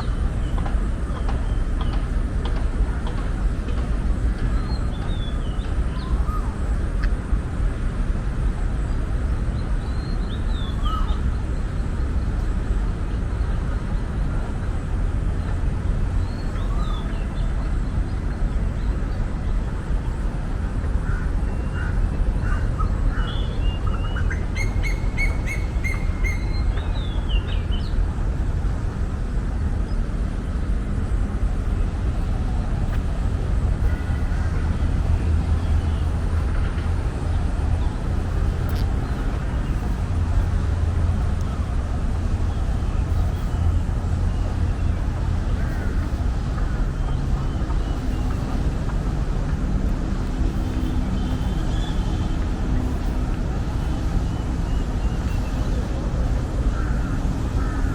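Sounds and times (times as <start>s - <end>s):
steady low rumble: 0.0s - 57.9s
birds chirping and calling: 22.5s - 27.5s.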